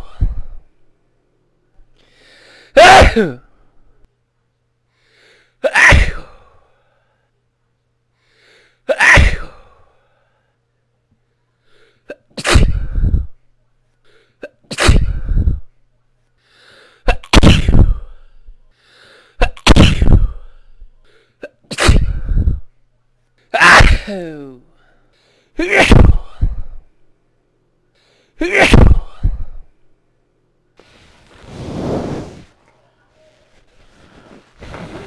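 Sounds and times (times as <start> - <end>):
faint intake of breath: 2.0 - 2.8, 4.9 - 5.6, 8.1 - 8.8, 16.4 - 17.1, 18.0 - 19.4
person sneezing loudly: 2.7 - 3.5, 5.6 - 6.5, 8.9 - 9.8, 12.1 - 13.2, 14.4 - 15.5, 17.0 - 18.0, 19.4 - 20.4, 21.4 - 22.4, 23.6 - 24.6, 25.6 - 26.6, 28.4 - 29.4.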